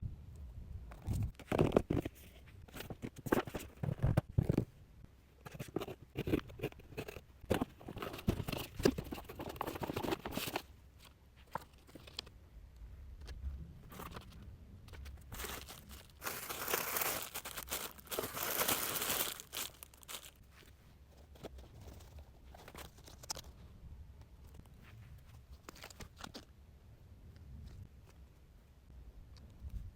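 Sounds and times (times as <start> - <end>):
packaging crinkling and tearing: 15.3 - 20.4.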